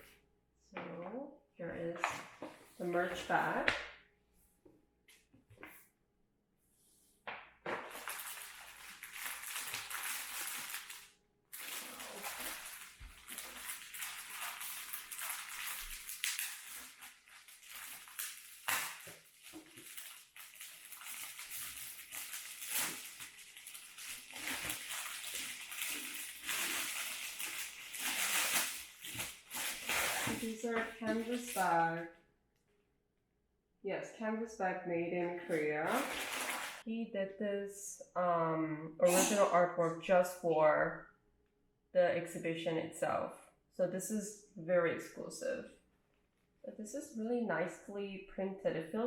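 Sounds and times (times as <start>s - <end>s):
packaging rustling and crinkling: 7.7s - 31.6s, 35.9s - 36.8s.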